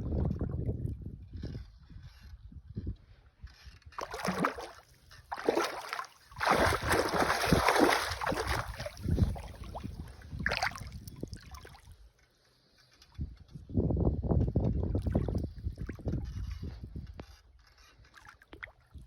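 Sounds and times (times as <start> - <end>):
water splashing and sloshing: 3.9 - 12.3, 14.8 - 16.6, 17.6 - 19.0.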